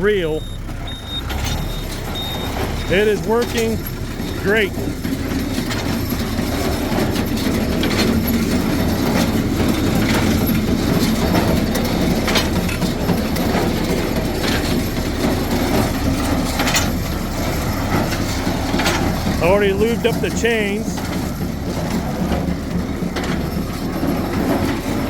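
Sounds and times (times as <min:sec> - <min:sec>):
baler mechanical clatter: 0:00.0 - 0:25.0
tractor engine: 0:00.0 - 0:25.0
sharp baler clack: 0:01.3 - 0:25.0.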